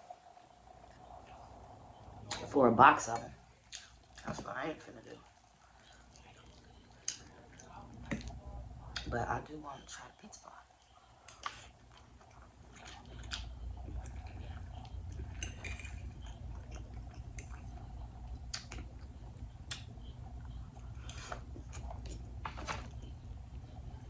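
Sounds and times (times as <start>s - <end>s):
steady low hum: 0.0s - 24.0s
person chewing food: 10.8s - 22.5s.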